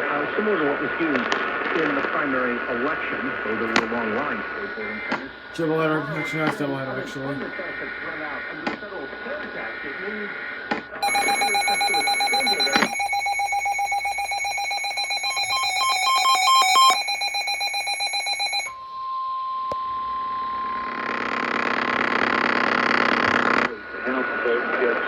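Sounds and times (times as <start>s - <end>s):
steady warning tone: 5.6s - 7.8s, 11.0s - 22.7s
warbling electronic data beeps: 11.0s - 18.7s.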